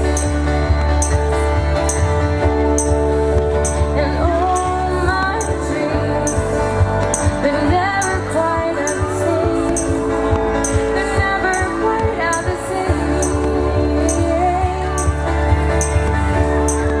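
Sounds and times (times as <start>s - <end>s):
bass and beat: 0.0s - 17.0s
woman singing: 3.7s - 15.9s.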